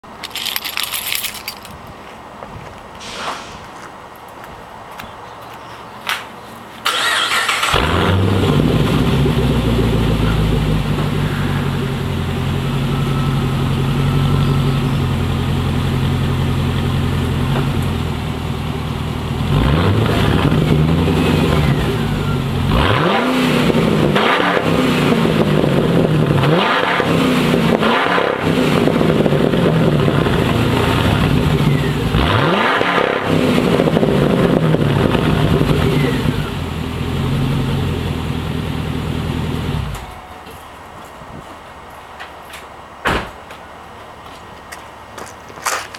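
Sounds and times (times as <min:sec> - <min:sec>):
car engine starting and idling: 0:06.8 - 0:41.0
car engine revving: 0:06.9 - 0:12.9, 0:19.0 - 0:40.0.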